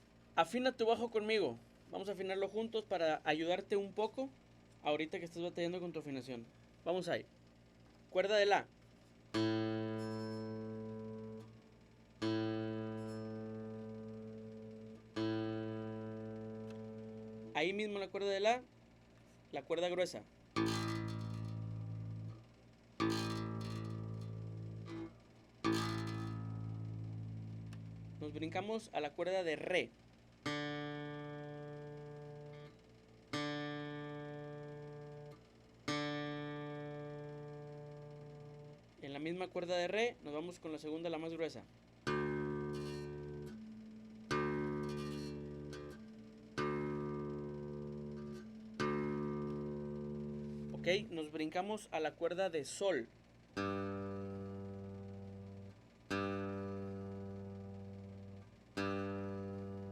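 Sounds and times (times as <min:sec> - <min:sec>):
guitar string plucked and ringing: 0:09.4 - 0:17.6, 0:20.6 - 0:28.7, 0:30.4 - 0:38.9, 0:42.0 - 0:51.5, 0:53.6 - 0:59.9.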